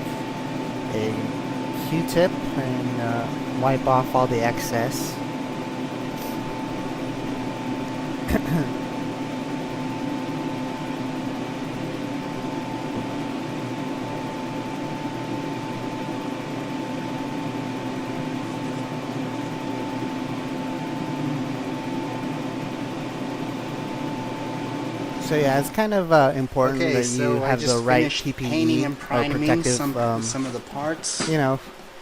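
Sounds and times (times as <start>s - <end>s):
high whine: 0.0s - 31.6s
small electric motor humming: 0.0s - 31.6s.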